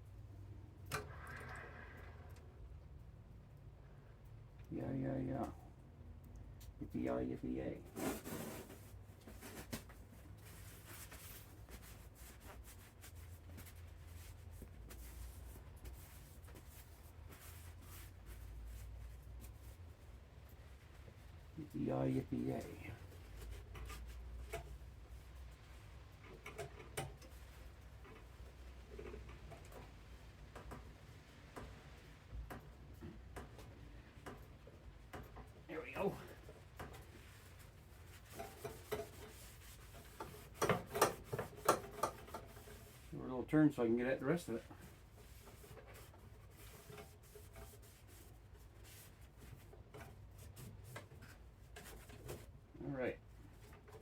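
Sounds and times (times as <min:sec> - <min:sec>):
faint clicks and taps of tools: 0:05.4 - 0:06.8, 0:23.3 - 0:24.8, 0:25.5 - 0:43.0.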